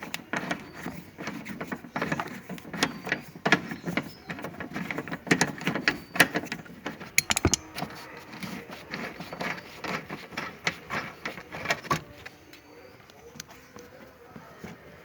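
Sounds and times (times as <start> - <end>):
metal tool clicks and knocks: 7.2 - 7.8.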